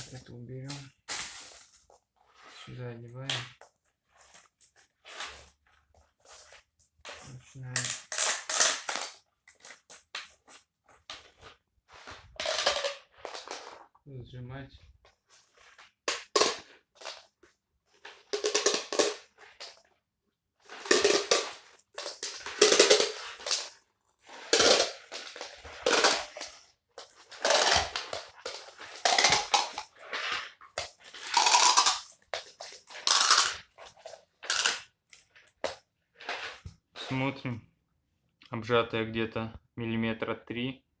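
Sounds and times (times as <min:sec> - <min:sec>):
plastic spiral core tugged out: 0:24.3 - 0:33.7.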